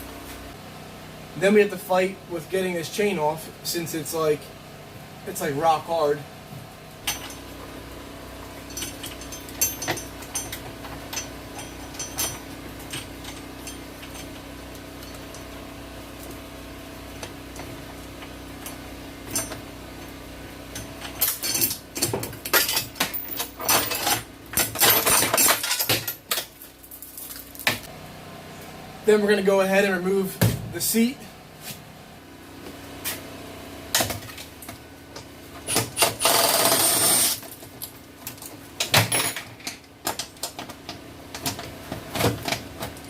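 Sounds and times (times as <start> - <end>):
metal chain clinking and rattling: 7.0 - 7.5, 8.6 - 15.5, 19.3 - 20.1, 20.8 - 27.7.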